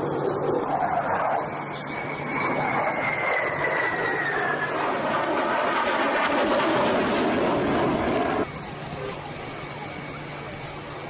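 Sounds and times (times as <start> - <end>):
thin high whine: 0.0 - 10.6
aircraft engine rushing: 0.0 - 11.0.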